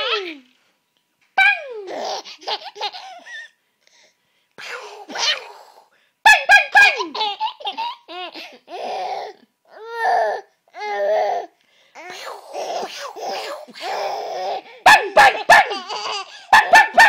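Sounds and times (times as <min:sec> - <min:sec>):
baby giggling: 0:01.8 - 0:03.6, 0:06.3 - 0:09.0, 0:12.0 - 0:17.0.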